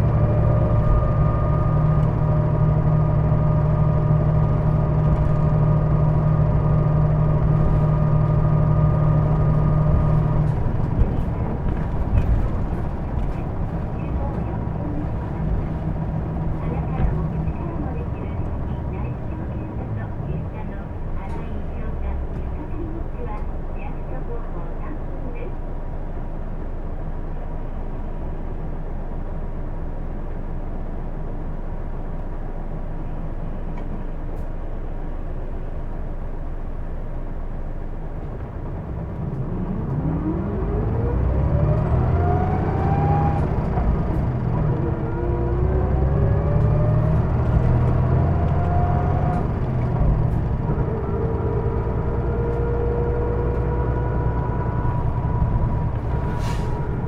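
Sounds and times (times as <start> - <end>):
bus engine revving through gears: 0.0 - 23.4, 38.1 - 57.0
bus diesel engine idling: 0.0 - 57.0.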